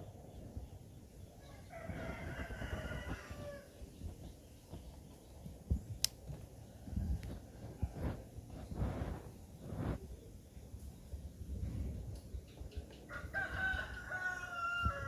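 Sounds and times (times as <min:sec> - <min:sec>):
rooster crowing: 0:01.4 - 0:03.7, 0:13.1 - 0:15.0
sharp click: 0:06.0 - 0:06.2.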